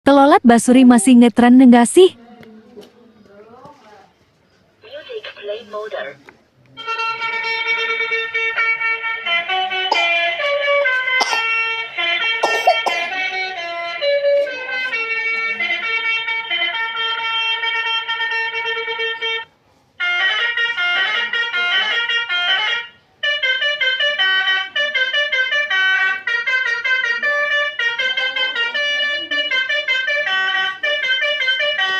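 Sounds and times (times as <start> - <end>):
bus horn playing a melody: 6.8 - 31.9.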